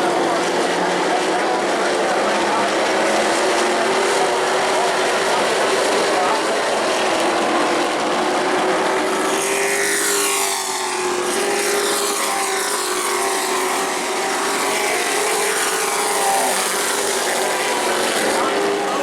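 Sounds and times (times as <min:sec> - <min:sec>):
racing truck engines: 0:00.0 - 0:19.0.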